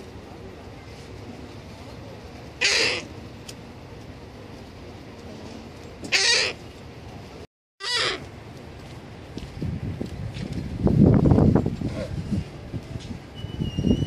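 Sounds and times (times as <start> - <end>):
seagull calling: 2.6 - 3.1, 6.0 - 6.6, 7.8 - 8.2.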